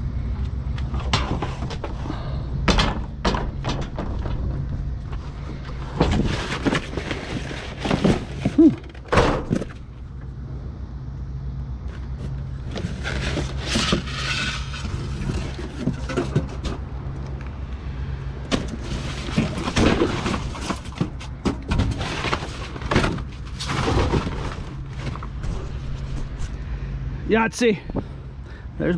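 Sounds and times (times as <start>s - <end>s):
steady low hum: 0.0s - 28.9s
junk rummaged in a dumpster: 0.7s - 10.2s, 11.9s - 17.3s, 18.4s - 26.7s
rustling: 4.2s - 9.9s, 11.9s - 16.8s.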